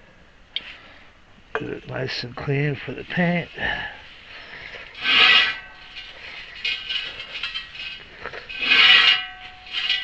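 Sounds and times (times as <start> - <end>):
rag scrubbing metal: 4.8 - 10.0
rag squeaking on metal rim: 4.9 - 10.0.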